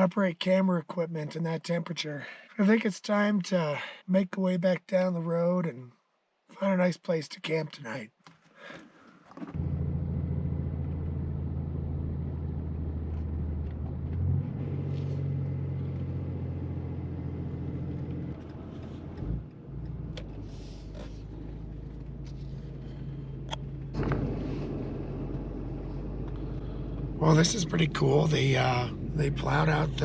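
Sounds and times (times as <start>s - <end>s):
diesel truck engine droning: 9.6s - 30.0s.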